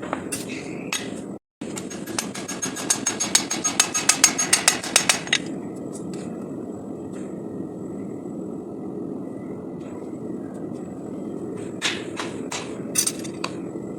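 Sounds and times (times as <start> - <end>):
hammer strikes on steel: 1.0 - 5.4, 11.8 - 12.8.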